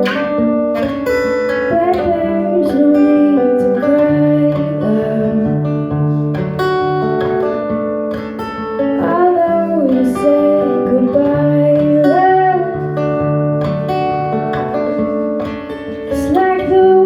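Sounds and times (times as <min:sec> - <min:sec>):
acoustic guitar strumming: 0:00.0 - 0:17.0
person singing wordlessly: 0:01.7 - 0:05.6, 0:09.0 - 0:12.8, 0:16.1 - 0:17.0.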